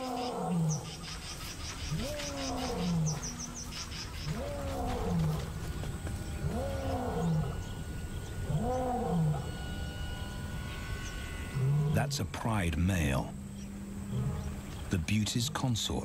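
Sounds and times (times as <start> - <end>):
male lion roaring: 4.3 - 5.6, 6.4 - 7.7.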